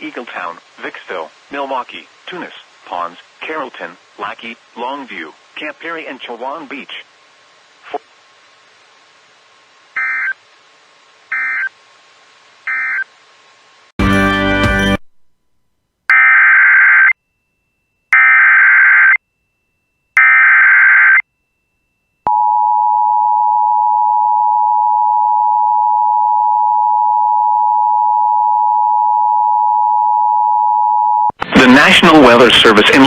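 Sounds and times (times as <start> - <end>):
digital data tone bursts: 10.0 - 10.4, 11.3 - 11.7, 12.7 - 13.1.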